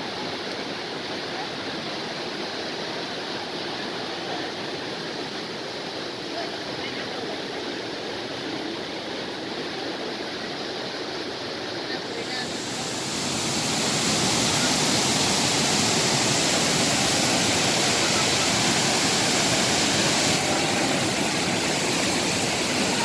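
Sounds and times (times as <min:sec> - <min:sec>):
waterfall roaring: 0:12.2 - 0:23.0.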